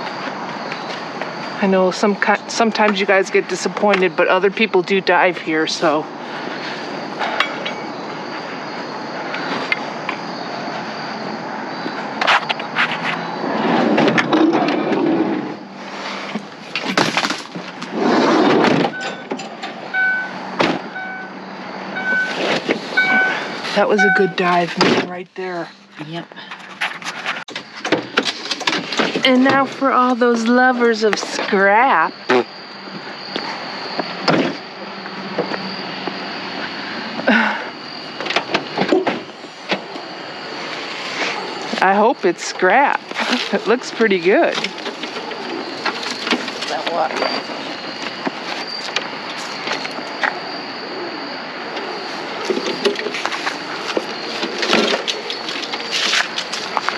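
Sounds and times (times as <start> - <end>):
vehicle reversing beeper: 18.9 - 25.8, 29.3 - 56.9.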